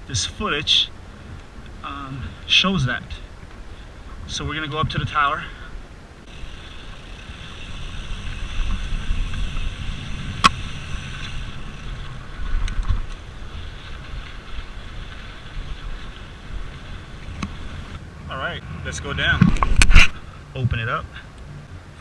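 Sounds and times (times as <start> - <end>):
wind rumble on microphone: 0.0 - 22.0
mountain bike pedalling on dirt: 0.2 - 18.2
small ticks: 6.3 - 13.2.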